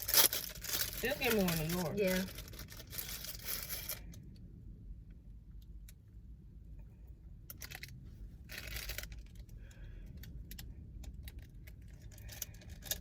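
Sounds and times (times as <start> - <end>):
plastic packaging crinkling: 0.0 - 4.0.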